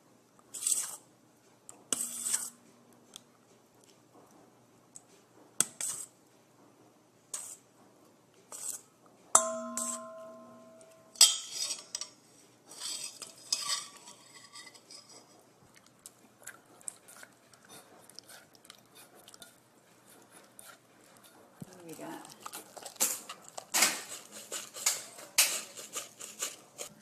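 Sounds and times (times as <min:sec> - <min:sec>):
utensil scraping and stirring: 0:00.5 - 0:01.1, 0:01.9 - 0:02.7, 0:05.6 - 0:06.2, 0:07.3 - 0:27.0
ringing strike: 0:09.4 - 0:11.4
utensil clinking in a bowl: 0:09.4 - 0:15.4, 0:18.8 - 0:27.0.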